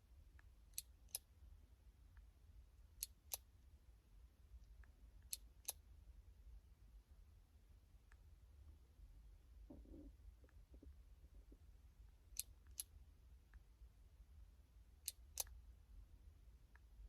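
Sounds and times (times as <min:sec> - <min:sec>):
faint low hum: 0:00.0 - 0:17.0
sharp double clicks: 0:15.0 - 0:15.6.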